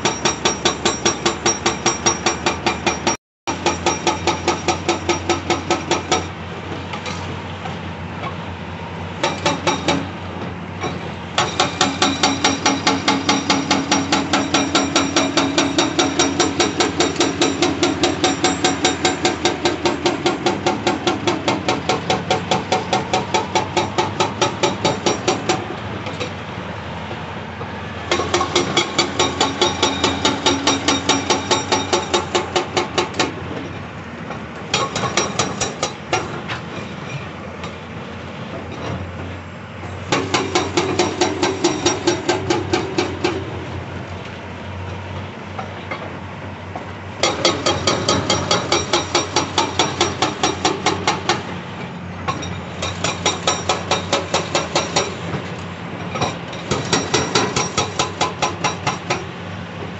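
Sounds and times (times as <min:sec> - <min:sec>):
hydraulic breaker hammering rock: 0:00.0 - 0:07.2, 0:09.2 - 0:26.3, 0:28.1 - 0:33.7, 0:34.3 - 0:36.8, 0:40.0 - 0:43.7, 0:47.2 - 0:51.6, 0:52.2 - 0:59.4
excavator diesel engine running: 0:00.0 - 0:59.9.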